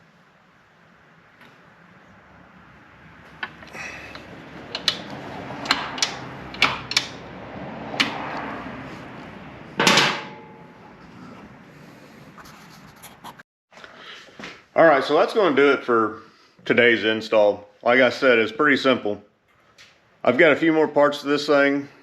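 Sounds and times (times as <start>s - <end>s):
hand tools clicking and knocking: 3.3s - 7.3s.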